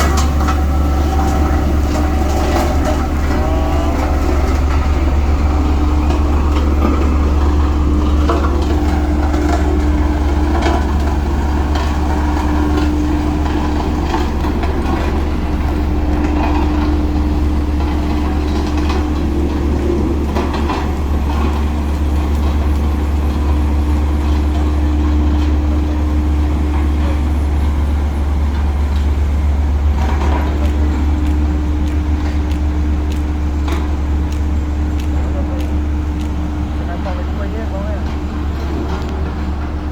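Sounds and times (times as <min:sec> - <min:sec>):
metal clanks and knocks: 0:00.0 - 0:21.6
diesel engine droning: 0:00.0 - 0:39.9.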